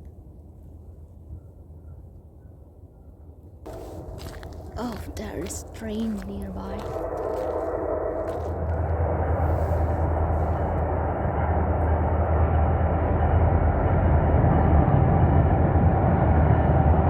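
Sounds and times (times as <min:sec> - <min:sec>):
train rumbling past: 0:03.7 - 0:17.0.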